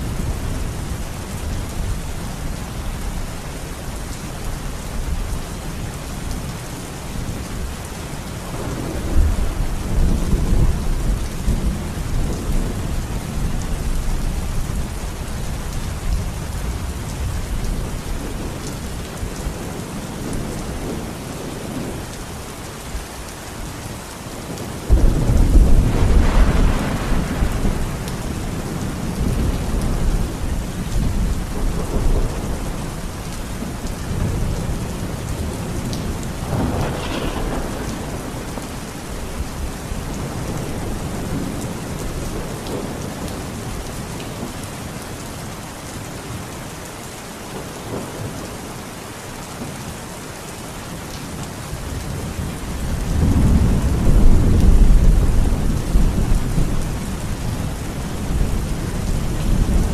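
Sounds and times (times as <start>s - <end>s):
heavy rain: 0.0s - 59.9s
thunder rumbling: 8.4s - 22.1s, 24.5s - 43.9s, 52.0s - 59.9s
loud thunderclap: 24.9s - 28.4s, 36.0s - 39.0s.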